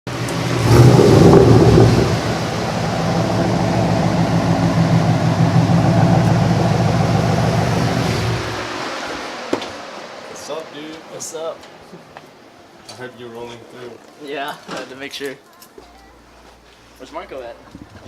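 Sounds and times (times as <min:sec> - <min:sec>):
car engine running: 0:00.1 - 0:10.3.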